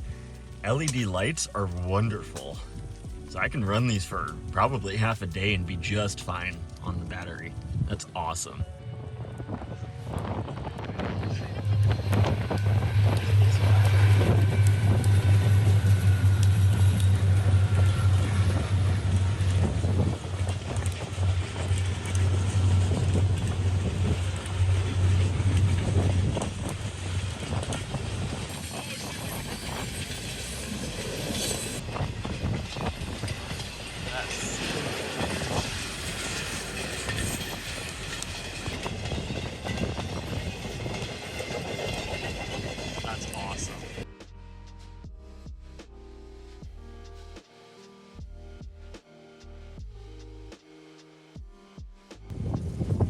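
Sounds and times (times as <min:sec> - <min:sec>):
wind buffeting microphone: 0:05.4 - 0:44.0, 0:52.3 - 0:53.0.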